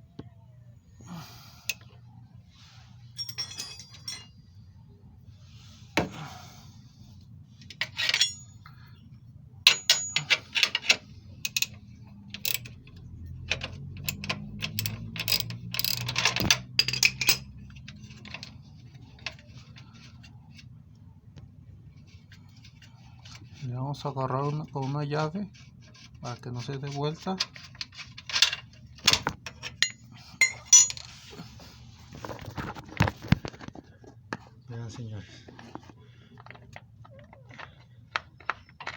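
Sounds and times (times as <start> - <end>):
metal hand tools clinking on bolts: 3.2 - 4.4, 7.7 - 8.6, 9.7 - 18.1, 29.5 - 31.1.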